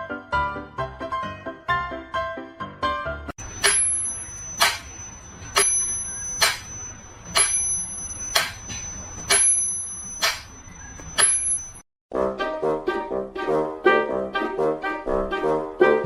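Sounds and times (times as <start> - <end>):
high metallic ding ringing: 3.4 - 11.8.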